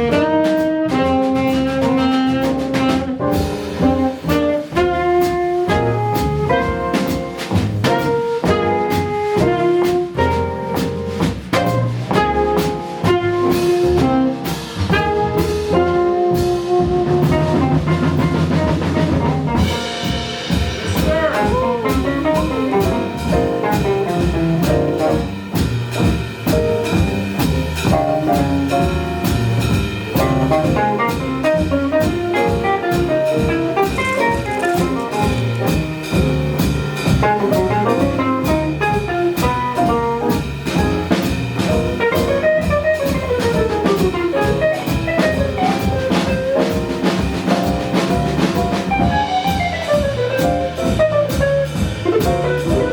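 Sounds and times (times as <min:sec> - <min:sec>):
bass: 0:00.0 - 0:52.9
drum kit: 0:00.0 - 0:52.9
melodic lead line: 0:44.5 - 0:51.1.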